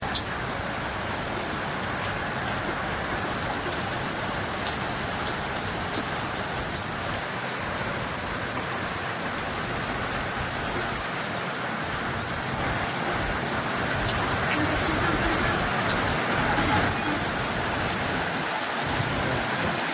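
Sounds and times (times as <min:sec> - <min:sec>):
rain falling: 0:00.0 - 0:19.9
raindrops striking close by: 0:00.0 - 0:19.9.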